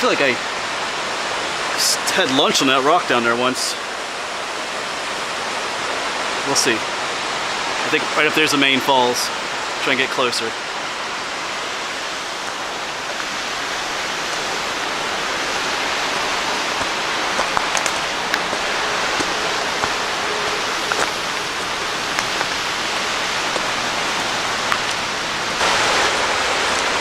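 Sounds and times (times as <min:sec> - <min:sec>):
waterfall and creek rushing: 0:00.0 - 0:27.0.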